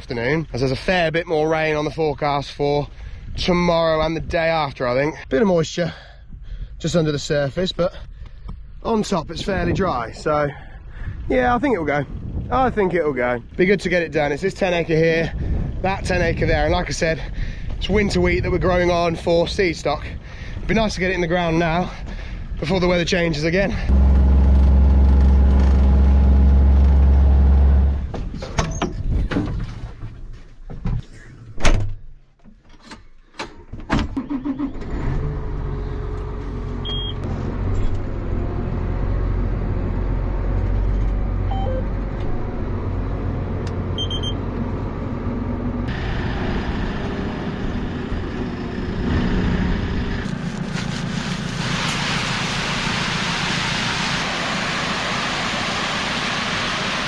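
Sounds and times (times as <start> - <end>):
tractor engine running: 23.9 - 28.3, 35.4 - 57.0
knocks and clunks: 28.0 - 34.2
short high beeps: 36.8 - 37.2, 41.5 - 41.9, 44.0 - 44.4.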